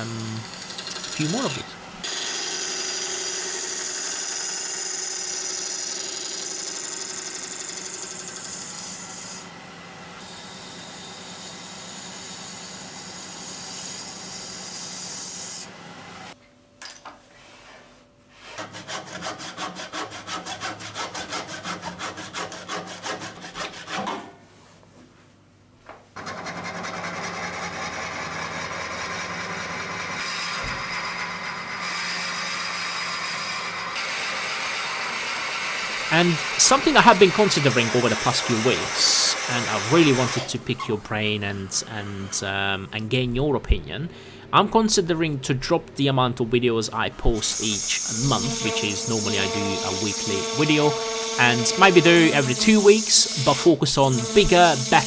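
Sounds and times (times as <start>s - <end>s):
lathe tool scraping wood: 0.0s - 9.5s, 10.2s - 15.7s, 26.2s - 42.6s, 47.2s - 55.0s
fast rubbing strokes: 47.4s - 55.0s.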